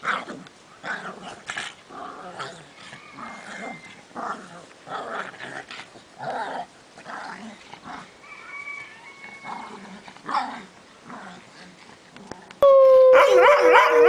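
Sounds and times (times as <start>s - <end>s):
thin high note: 12.6s - 14.0s
dog barking: 13.1s - 14.0s.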